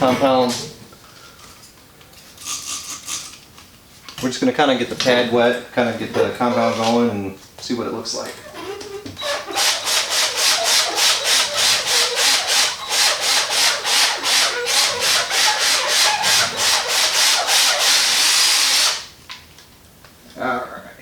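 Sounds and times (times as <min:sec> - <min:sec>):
foam pad rubbing plastic: 0:08.6 - 0:18.6.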